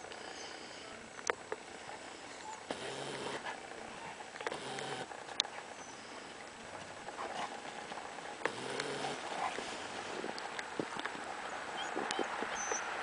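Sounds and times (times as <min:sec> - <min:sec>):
small clicks: 0:04.4 - 0:05.6, 0:08.4 - 0:09.0
paws pattering in snow: 0:05.0 - 0:12.8.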